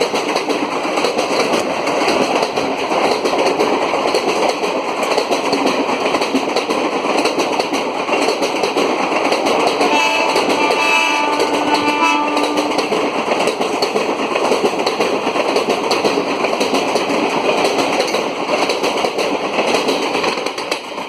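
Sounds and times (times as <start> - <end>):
train rushing past: 0.0 - 21.0
train horn chord: 9.8 - 12.9.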